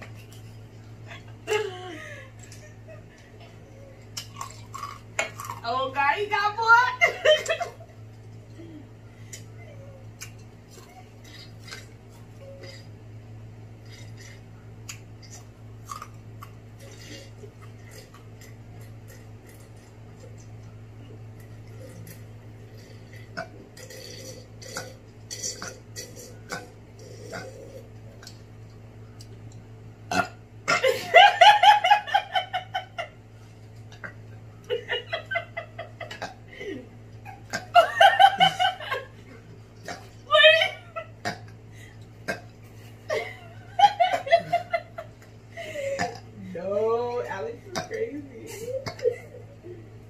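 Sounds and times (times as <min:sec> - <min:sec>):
steady low hum: 0:00.0 - 0:50.0
chewing: 0:04.0 - 0:05.6, 0:13.8 - 0:29.6
high-pitched laughter: 0:40.3 - 0:41.2.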